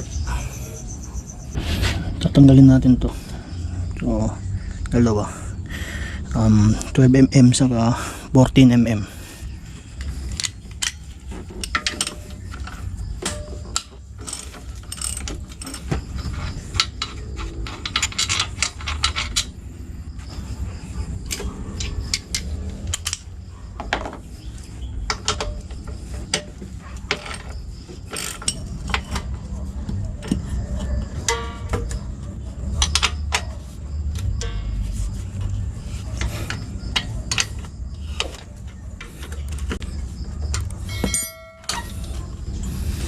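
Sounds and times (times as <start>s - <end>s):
metal tools clinking: 10.0s - 42.3s.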